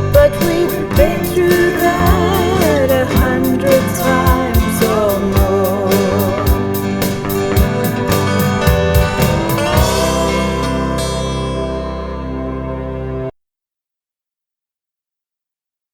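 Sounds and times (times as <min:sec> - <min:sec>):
steady drum beat: 0:00.0 - 0:11.1
band playing country-folk song: 0:00.0 - 0:13.3.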